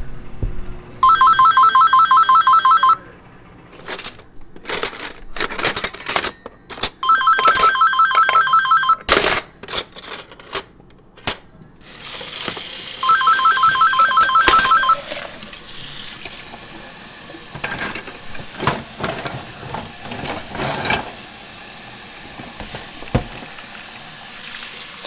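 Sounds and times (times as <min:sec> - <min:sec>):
electronic telephone ring: 0:01.0 - 0:03.1, 0:06.6 - 0:09.1, 0:13.0 - 0:15.3
steady hissing rush: 0:15.2 - 0:20.2.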